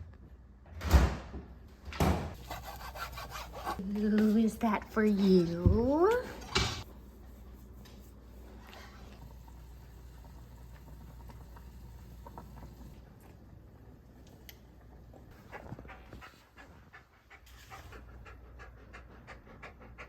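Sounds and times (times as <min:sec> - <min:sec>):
dog panting: 0:15.3 - 0:20.0.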